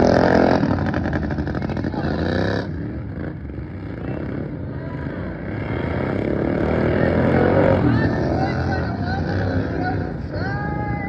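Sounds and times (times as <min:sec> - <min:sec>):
racing lawnmower engines: 0:00.0 - 0:11.0.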